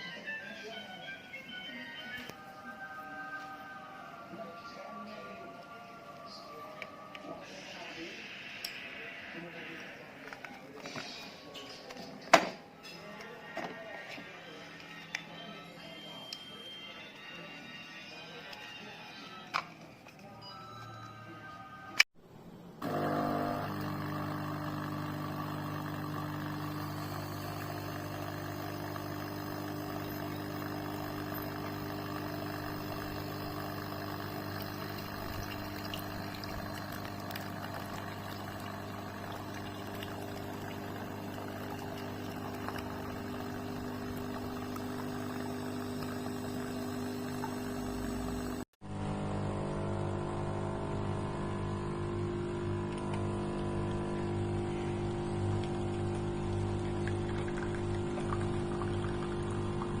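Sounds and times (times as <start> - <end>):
coffee pouring into cup: 22.8 - 48.6, 55.0 - 60.0
espresso machine pump humming: 22.8 - 60.0.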